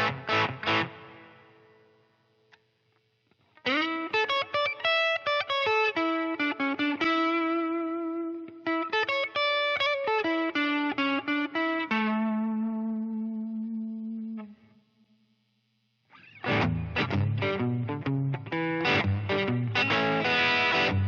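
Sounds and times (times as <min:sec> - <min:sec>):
distorted electric guitar lead: 0:00.0 - 0:01.9, 0:16.1 - 0:21.0.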